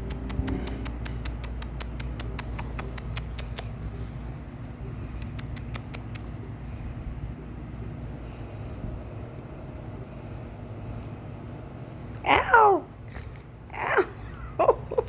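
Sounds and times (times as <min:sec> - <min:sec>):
rapid light clicks: 0:00.0 - 0:03.8, 0:05.1 - 0:06.4
steady low hum: 0:00.0 - 0:15.0.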